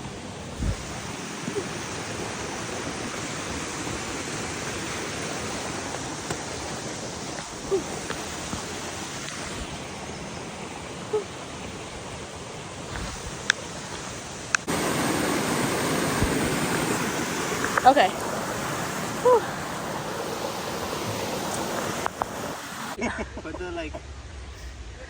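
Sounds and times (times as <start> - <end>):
steady rushing noise: 12.9 - 25.0.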